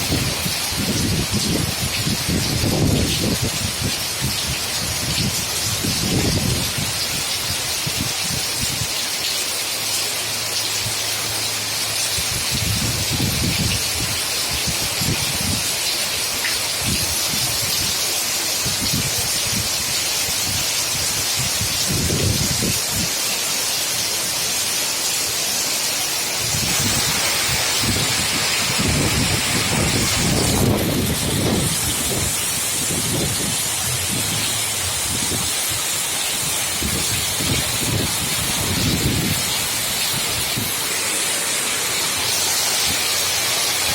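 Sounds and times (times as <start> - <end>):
wind gusting: 0.0 - 8.9, 18.6 - 23.1, 26.4 - 43.9
heavy rain hissing: 0.0 - 43.9.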